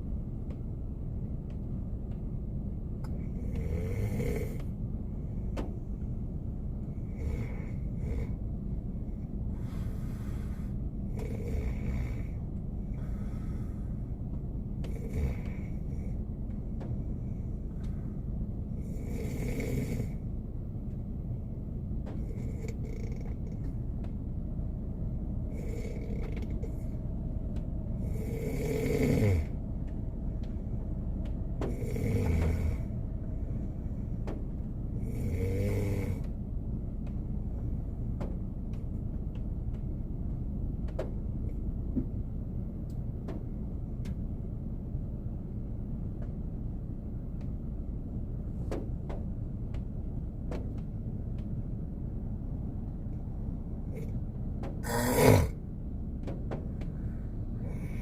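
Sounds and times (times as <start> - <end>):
steady low rumble: 0.0 - 58.0
man snoring: 3.4 - 4.6, 7.0 - 8.4, 9.6 - 12.4, 14.8 - 15.9, 18.8 - 20.2, 22.3 - 23.5, 25.5 - 26.8, 28.0 - 29.6, 31.6 - 32.9, 35.0 - 36.3, 54.8 - 55.6.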